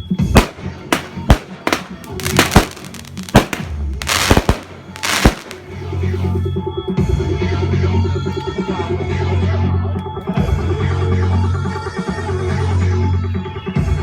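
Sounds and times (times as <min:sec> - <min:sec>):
fireworks bangs: 0:00.0 - 0:06.4.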